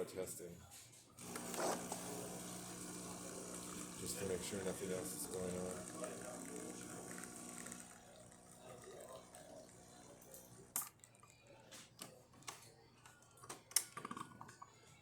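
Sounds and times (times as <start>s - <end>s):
espresso machine pump humming: 1.2s - 10.8s.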